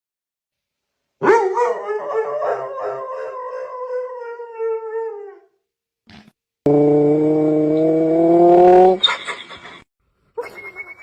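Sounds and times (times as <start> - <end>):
dog howling: 1.2 - 5.5.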